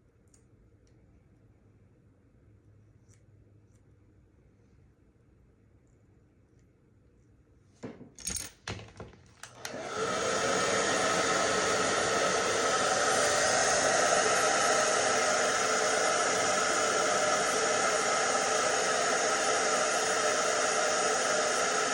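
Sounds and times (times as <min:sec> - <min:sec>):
handling knocks and clatters: 0:07.8 - 0:09.4
hair dryer blowing: 0:09.4 - 0:21.9.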